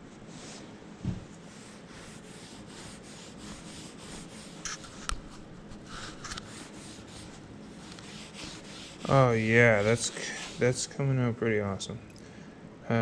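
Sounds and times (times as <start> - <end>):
scratchy rubbing on wood: 1.4 - 5.1, 5.7 - 10.9.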